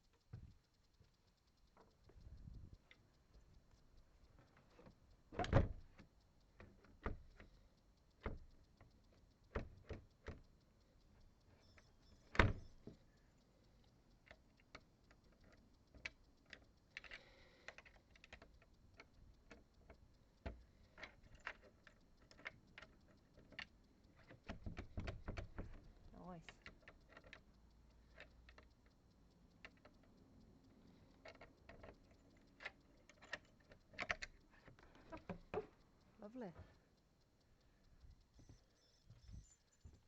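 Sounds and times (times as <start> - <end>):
door latch clicking: 5.3 - 5.8, 12.3 - 12.6.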